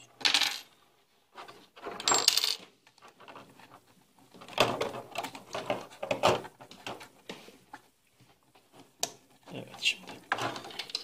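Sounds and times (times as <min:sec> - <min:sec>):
small metal parts clinking: 0:10.4 - 0:11.0.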